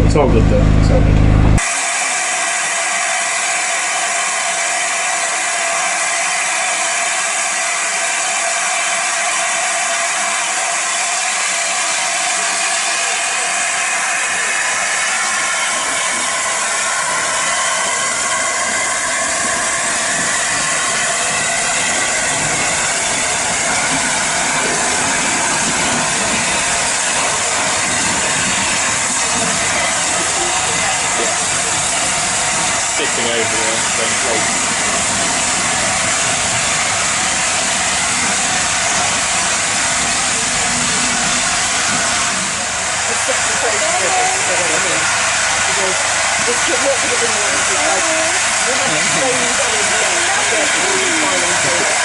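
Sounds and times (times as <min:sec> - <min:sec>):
low rumble: 0:00.0 - 0:01.6
steam locomotive hissing: 0:01.6 - 0:52.0.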